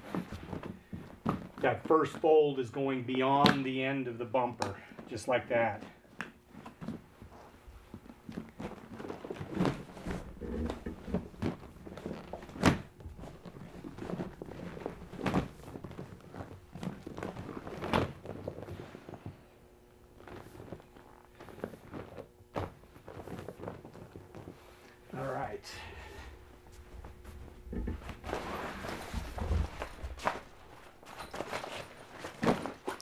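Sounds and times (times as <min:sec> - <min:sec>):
heavy fabric rustling and scraping: 0:06.5 - 0:25.2, 0:25.9 - 0:33.0.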